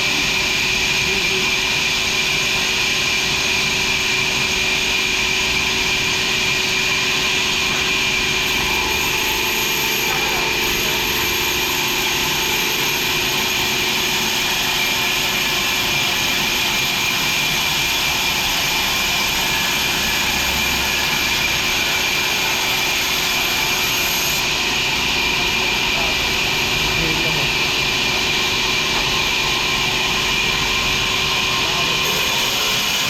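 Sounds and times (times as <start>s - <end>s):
sawmill machinery hissing: 6.6s - 33.0s.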